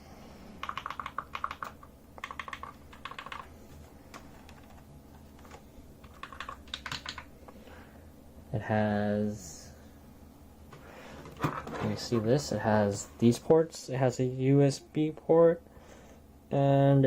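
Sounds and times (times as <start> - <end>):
mechanical keyboard clicking: 0.6 - 3.5, 5.4 - 7.3.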